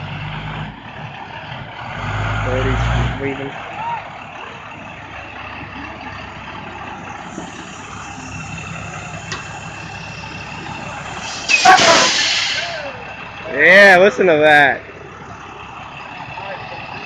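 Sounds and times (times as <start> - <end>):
bus diesel engine running: 0.0 - 17.0
air brake hiss: 11.2 - 12.8.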